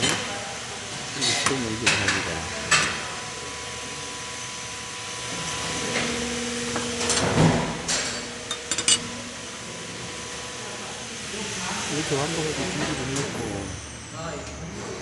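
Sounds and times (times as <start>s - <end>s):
metal knocks and clinks: 8.5s - 9.1s.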